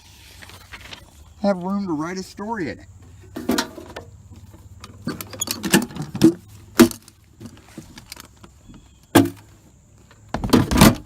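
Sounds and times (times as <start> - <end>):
handling rustle: 0.0 - 1.8, 3.2 - 11.0
metal cans clanking: 3.3 - 4.0, 4.9 - 7.1.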